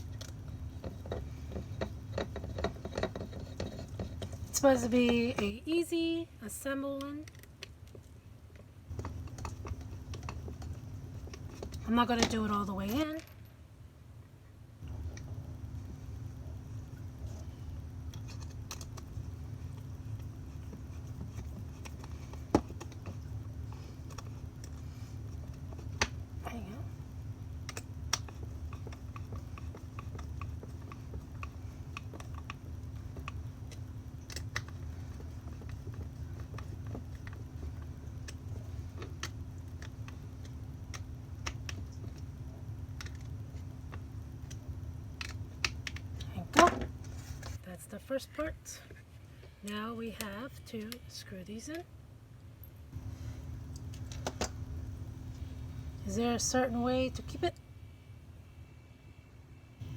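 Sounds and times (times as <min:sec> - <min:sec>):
small parts clicking and tapping: 0:00.0 - 0:05.5, 0:18.1 - 0:24.8, 0:27.6 - 0:47.5
steady low hum: 0:00.0 - 0:59.9.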